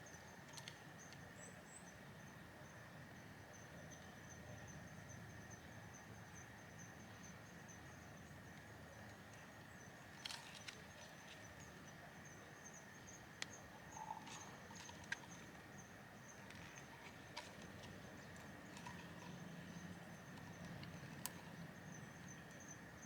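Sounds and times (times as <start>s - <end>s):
light clicks and taps: 16.4s - 21.6s.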